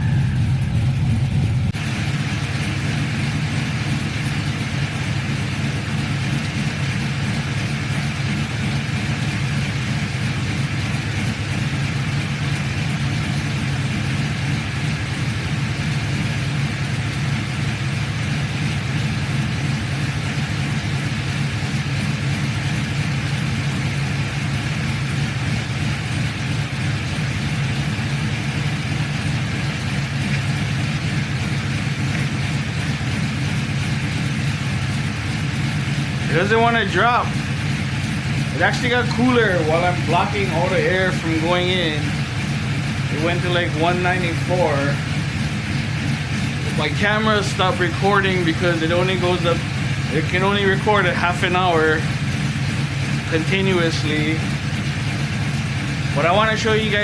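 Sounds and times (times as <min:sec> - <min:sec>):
engine idling: 0:00.0 - 0:57.0
radiator fans blowing: 0:00.0 - 0:57.0.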